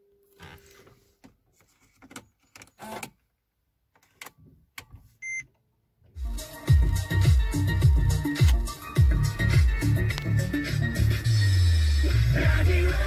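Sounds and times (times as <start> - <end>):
music with heavy beat: 6.2 - 13.0.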